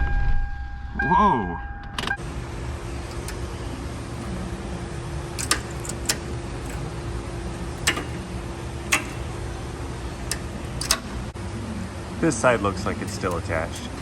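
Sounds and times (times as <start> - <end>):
vehicle engine humming: 2.2 - 14.0
sharp clicks: 2.5 - 11.4, 13.0 - 14.0.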